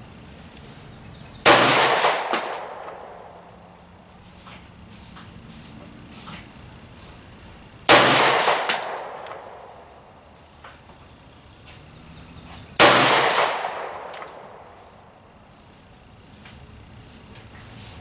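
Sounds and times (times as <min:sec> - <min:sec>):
pistol shots with echo: 0:01.4 - 0:03.5, 0:07.9 - 0:10.2, 0:12.8 - 0:14.8.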